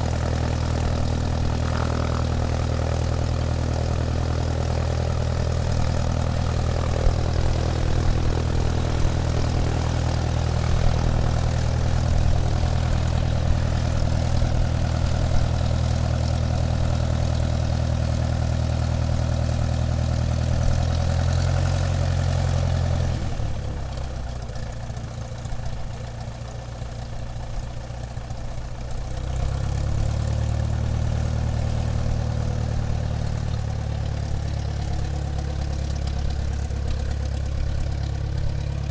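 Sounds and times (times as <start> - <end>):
airplane engine drone: 0.0 - 18.0.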